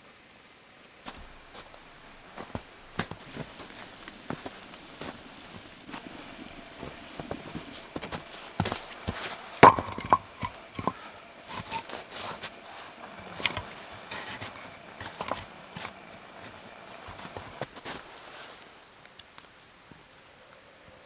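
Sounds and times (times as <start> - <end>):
objects knocking and clinking: 6.4 - 12.0.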